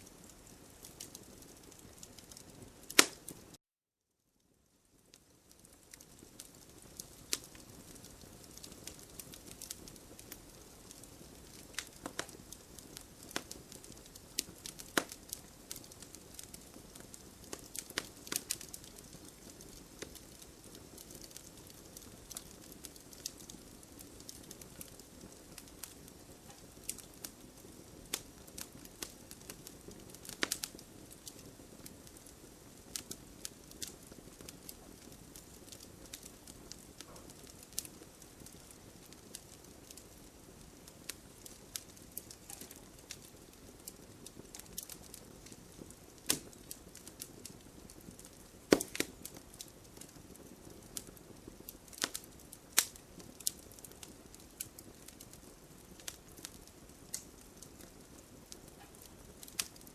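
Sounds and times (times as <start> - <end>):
campfire crackling and popping: 0.0 - 3.6, 4.7 - 59.9.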